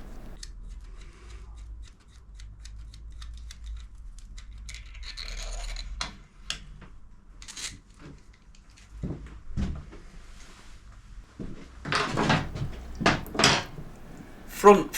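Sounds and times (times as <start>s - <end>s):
dull thumps: 12.2s - 14.5s.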